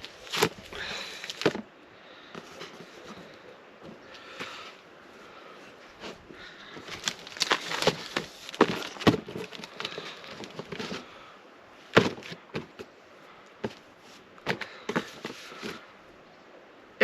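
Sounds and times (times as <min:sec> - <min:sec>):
shirt rustling: 0:05.9 - 0:11.1
cardboard panels flapping: 0:06.8 - 0:11.0.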